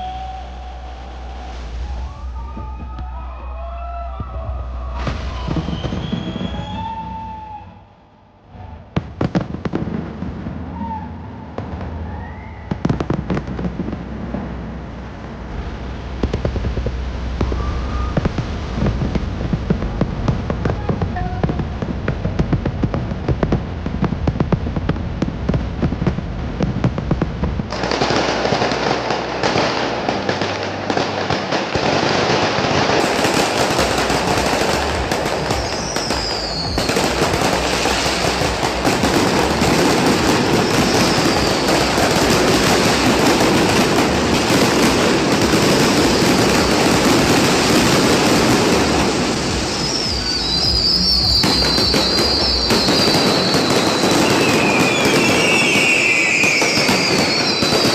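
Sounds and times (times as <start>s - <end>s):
fireworks bangs and crackling: 0.0s - 7.8s, 8.5s - 57.9s
high falling whistles: 0.0s - 8.0s, 17.4s - 18.3s, 35.5s - 37.1s, 49.2s - 57.9s.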